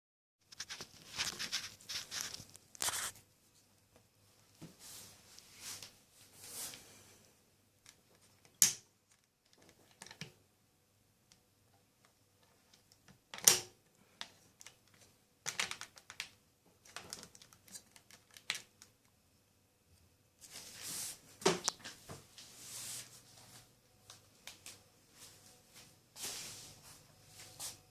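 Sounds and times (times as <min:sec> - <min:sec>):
plastic clicks and rattles of handling: 0:07.8 - 0:10.4, 0:12.0 - 0:19.2.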